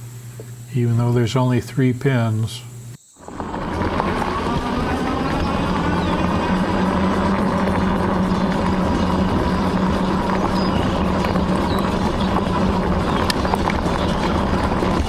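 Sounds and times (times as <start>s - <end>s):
electric motor hum: 0.0s - 15.0s
wind noise: 3.2s - 15.0s.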